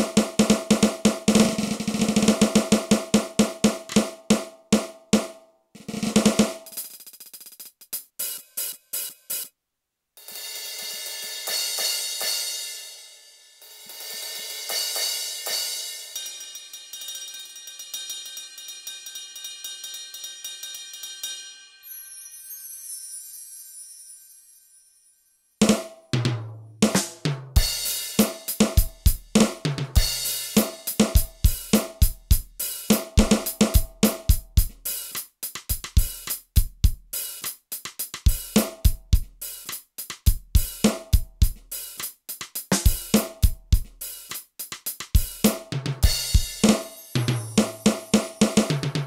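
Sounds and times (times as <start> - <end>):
electronic drum kit groove: 0.0 - 9.6, 25.6 - 49.0.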